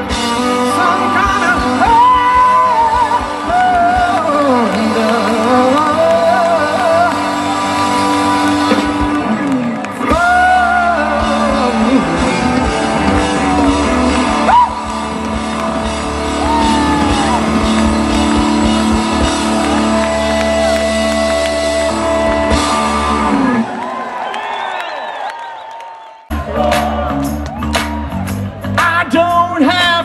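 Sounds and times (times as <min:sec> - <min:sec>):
bending sliding lead melody: 0:00.0 - 0:23.7
live rock band playing: 0:00.0 - 0:24.2, 0:26.3 - 0:30.0.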